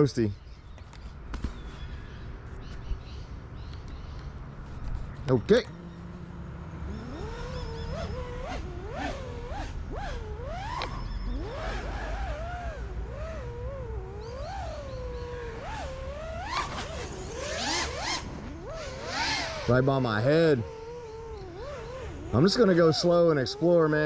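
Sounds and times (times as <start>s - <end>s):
quadcopter motors whining: 0.7s - 24.0s.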